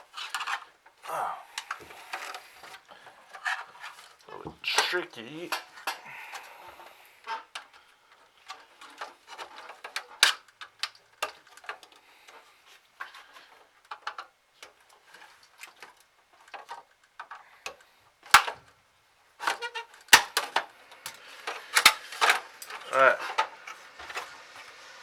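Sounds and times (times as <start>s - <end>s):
plastic casing clicks and scrapes: 0.0s - 0.9s, 8.5s - 18.7s, 19.4s - 24.6s
sharp plastic snaps: 16.6s - 18.7s, 19.4s - 23.5s.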